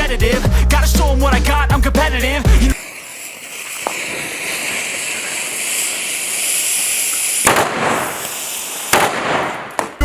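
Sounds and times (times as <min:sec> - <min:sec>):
firecracker hiss: 0:00.4 - 0:10.0
firecracker bangs: 0:02.7 - 0:10.0.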